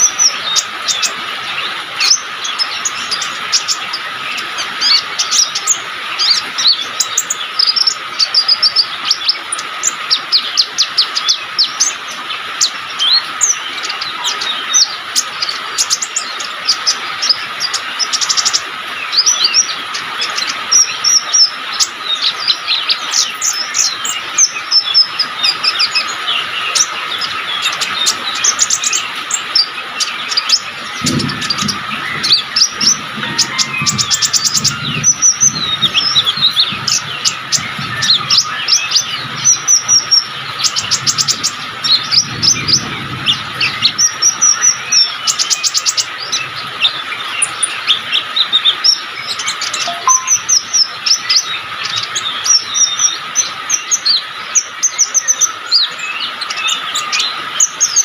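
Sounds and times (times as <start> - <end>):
songbird chirps and trills: 0.0 - 58.0.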